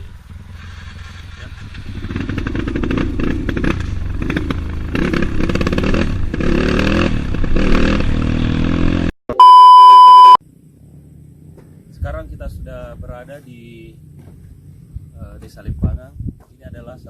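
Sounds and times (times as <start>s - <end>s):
motorcycle engine revving: 0.0s - 9.2s
electronic beep tone: 9.3s - 10.4s.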